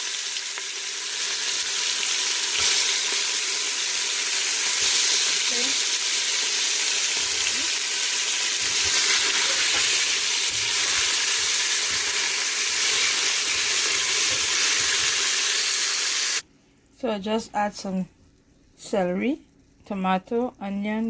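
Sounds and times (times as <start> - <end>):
frying sizzle in a pot: 0.0 - 16.5.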